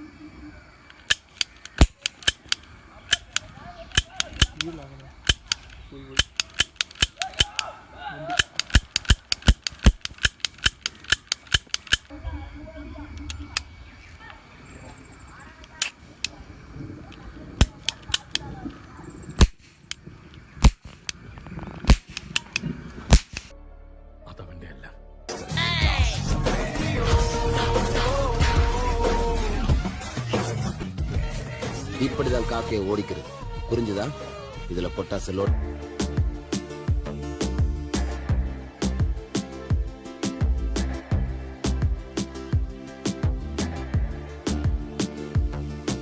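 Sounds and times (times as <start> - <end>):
cap gun cracks: 0.9 - 12.2, 13.1 - 13.7, 15.6 - 23.5.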